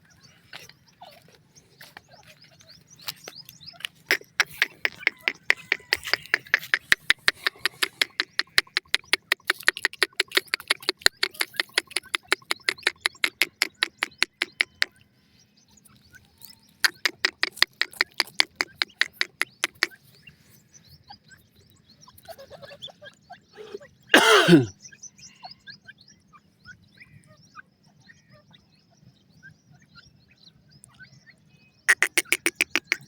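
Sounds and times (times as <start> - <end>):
bird ticking call: 0.5 - 15.0, 16.0 - 20.1, 31.9 - 33.0.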